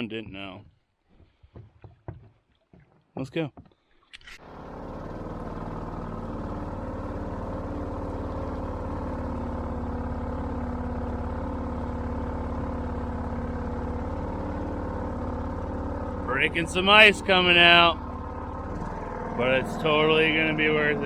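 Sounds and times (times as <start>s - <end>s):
boat motor droning: 4.4s - 21.0s.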